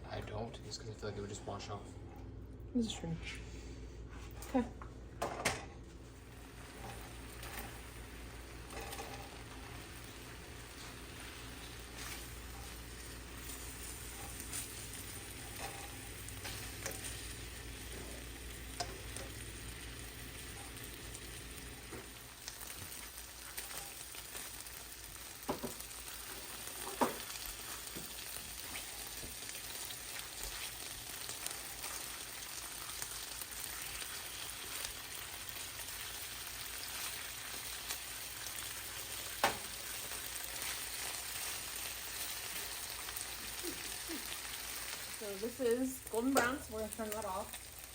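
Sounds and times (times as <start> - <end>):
chicken sizzling in oil: 6.2 - 47.9.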